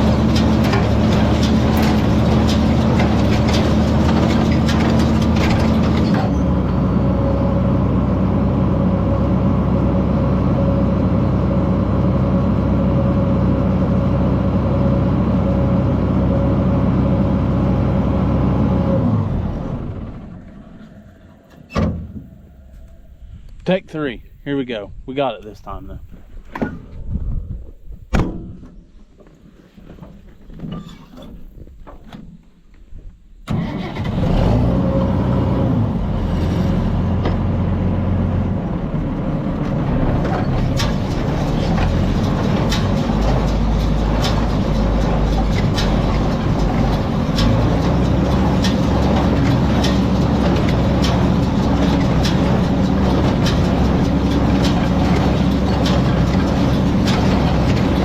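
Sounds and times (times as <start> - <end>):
baler clacking: 0.0 - 6.8, 39.6 - 58.0
tractor engine drone: 0.0 - 24.7, 33.4 - 58.0.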